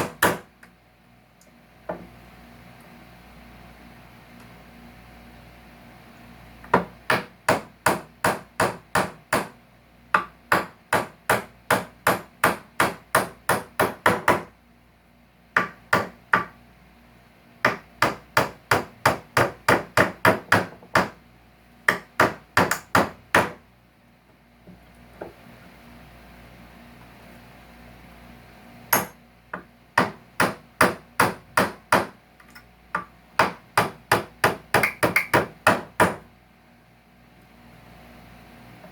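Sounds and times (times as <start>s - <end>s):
hammer striking nails in wood: 0.0s - 0.5s, 6.7s - 9.6s, 10.2s - 14.5s, 15.6s - 16.6s, 17.7s - 21.2s, 21.9s - 23.6s, 28.9s - 29.2s, 30.0s - 32.2s, 33.0s - 36.2s.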